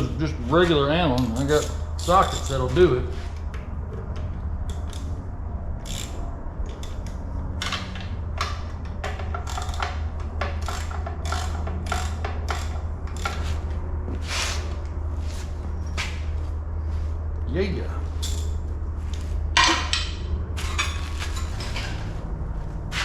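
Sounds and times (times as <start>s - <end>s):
steady low hum: 0.0s - 23.0s
socket ratchet clicking: 4.6s - 5.2s, 5.8s - 13.4s.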